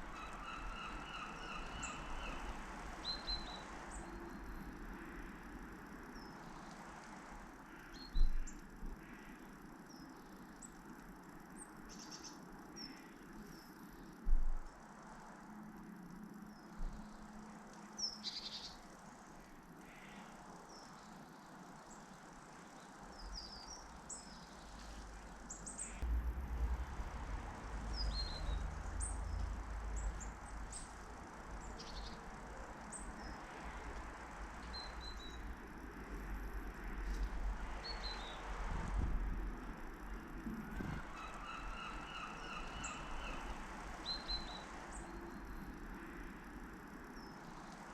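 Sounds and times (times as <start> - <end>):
birds chirping and tweeting: 0.0 - 14.6, 16.2 - 26.1, 27.7 - 35.9, 37.6 - 39.2, 40.2 - 46.0
outdoor background noise: 0.0 - 47.9
low rumble: 26.0 - 31.3.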